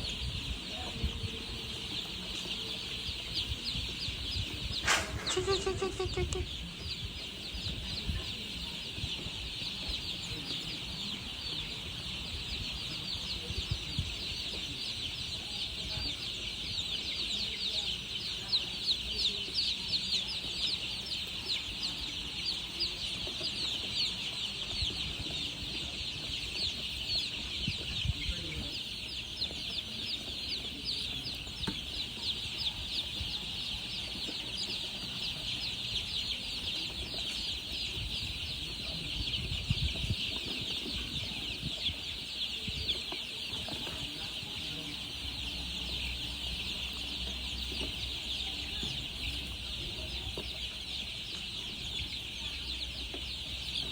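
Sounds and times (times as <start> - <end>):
baby chicks peeping: 0.0 - 53.9.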